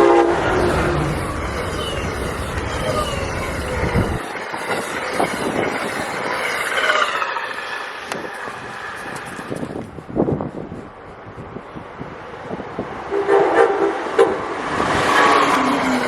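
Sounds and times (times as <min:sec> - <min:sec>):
train passing at speed: 0:00.0 - 0:16.0
hiss: 0:00.3 - 0:11.8, 0:14.7 - 0:16.0.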